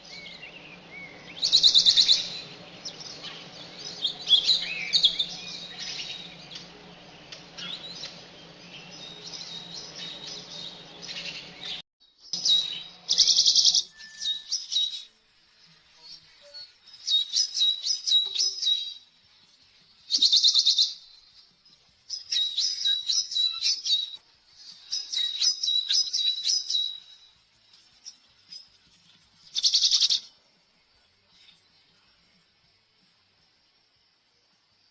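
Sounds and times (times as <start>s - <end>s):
songbirds chirping: 0.0s - 34.9s
loud buzzy bird trills: 29.4s - 30.3s.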